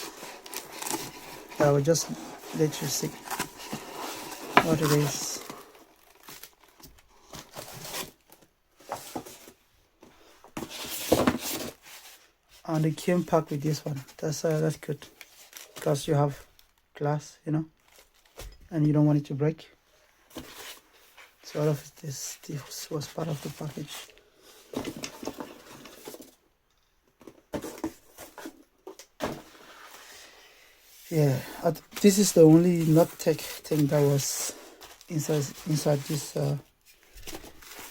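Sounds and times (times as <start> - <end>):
packaging rustling and tearing: 0.0 - 8.3, 15.2 - 15.8, 31.7 - 37.9.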